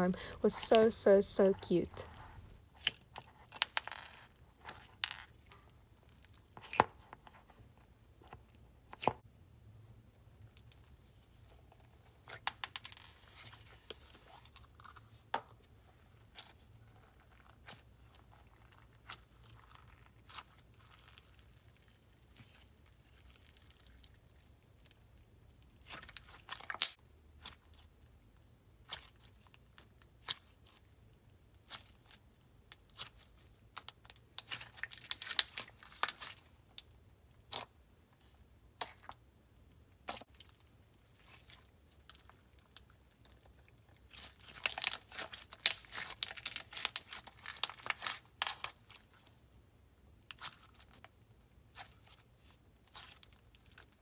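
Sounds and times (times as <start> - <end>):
slime squishing and popping: 25.8 - 27.8, 32.7 - 37.8, 40.0 - 49.1.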